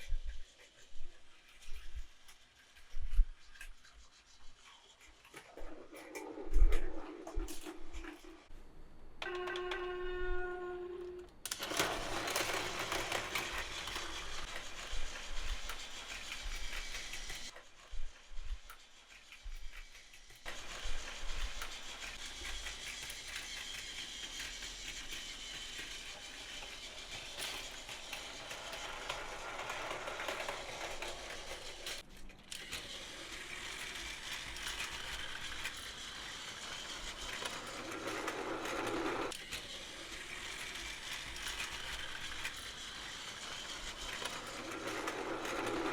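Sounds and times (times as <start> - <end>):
toy train motor whir: 0.0 - 8.5, 9.2 - 45.9
toy cars rattling over track: 11.4 - 17.8, 18.6 - 45.9.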